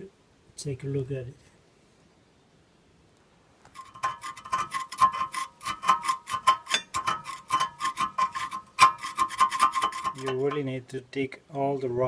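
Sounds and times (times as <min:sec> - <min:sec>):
metal tool scraping rust: 0:03.7 - 0:10.7.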